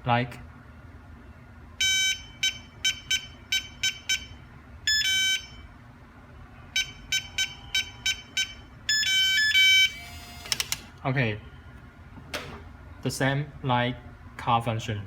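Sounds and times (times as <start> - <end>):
keypad lock beeps: 6.8 - 10.8.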